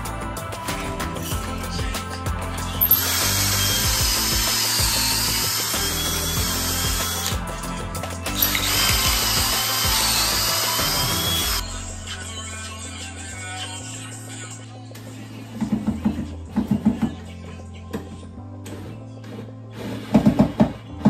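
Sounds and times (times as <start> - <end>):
background music with bass line: 0.0 - 21.0
power tool whining: 2.7 - 11.8.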